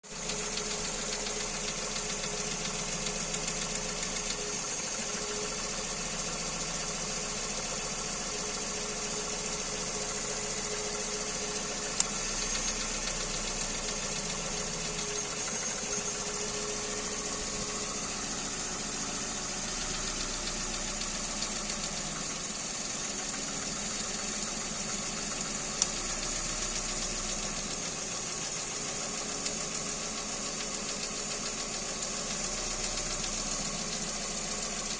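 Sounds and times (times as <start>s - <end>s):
car engine idling with knock: 0.1s - 34.9s
sharp clicks: 11.9s - 12.4s.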